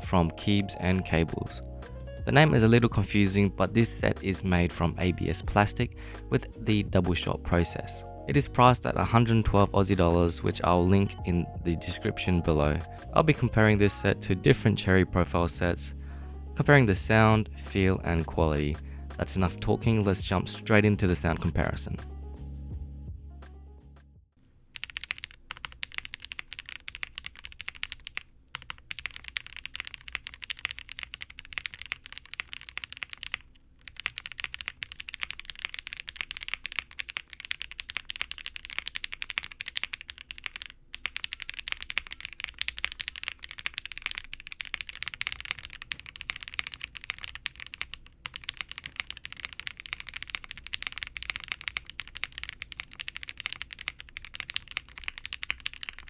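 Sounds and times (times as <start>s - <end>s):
fast typing on mechanical keyboard: 0.4s - 1.6s, 24.7s - 56.0s.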